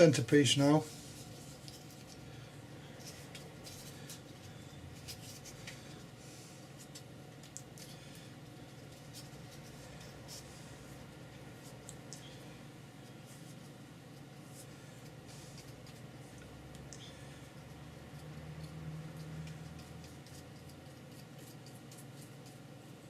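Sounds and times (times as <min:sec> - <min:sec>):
steady low hum: 0:00.0 - 0:23.0
paper and board handled: 0:00.6 - 0:12.4.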